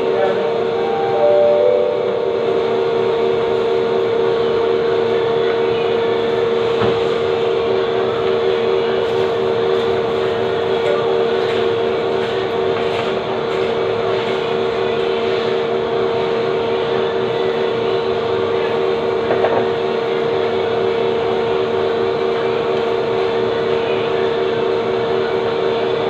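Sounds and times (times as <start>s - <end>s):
machine hum: 0.0s - 6.4s.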